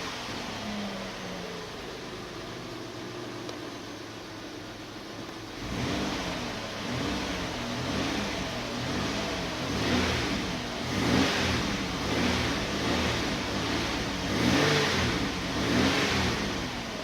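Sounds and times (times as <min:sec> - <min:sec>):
engine revving with misfire: 0:00.0 - 0:01.8, 0:05.5 - 0:17.0.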